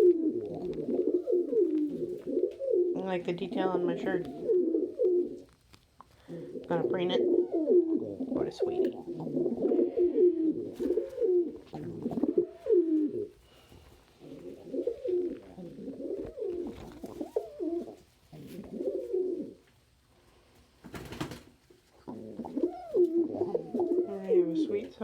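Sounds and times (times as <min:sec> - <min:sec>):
pigeons cooing: 0:00.0 - 0:05.5, 0:06.2 - 0:19.6, 0:21.9 - 0:25.0.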